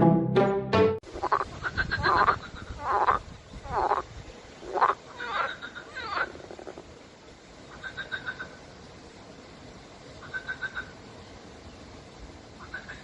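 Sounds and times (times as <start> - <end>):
music note: 0.0 - 1.0
frog croaking: 1.1 - 6.9, 7.7 - 8.6, 10.2 - 11.0, 12.6 - 13.0.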